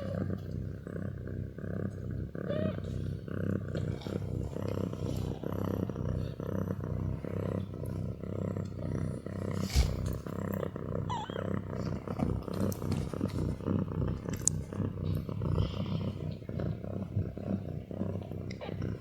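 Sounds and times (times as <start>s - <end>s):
cat purring: 0.0s - 19.0s
sharp thump: 9.6s - 10.2s.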